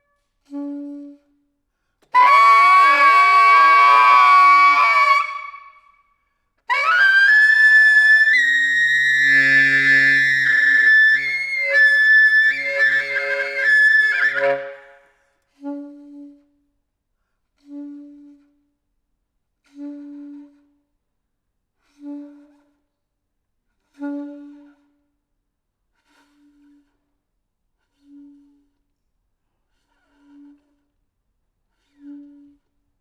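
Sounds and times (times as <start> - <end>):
saxophone sustained tones: 2.2 - 5.7, 6.7 - 15.0
soft low saxophone notes: 8.3 - 14.9.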